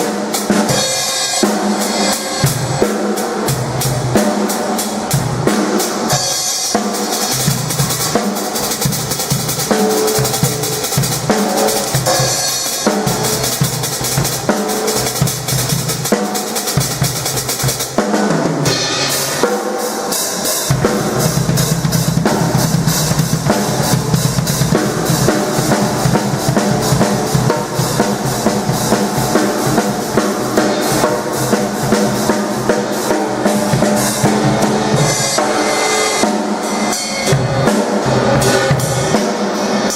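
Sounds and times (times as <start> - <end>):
drum kit played loud: 0.0 - 39.9.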